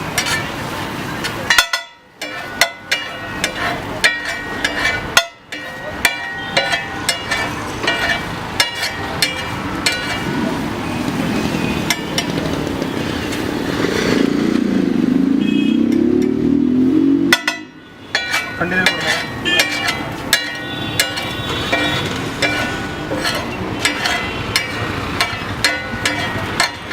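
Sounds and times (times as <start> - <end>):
metal spatula clanking on griddle: 0.1 - 10.6, 11.9 - 13.4, 17.3 - 26.9
engine passing by: 7.8 - 17.8.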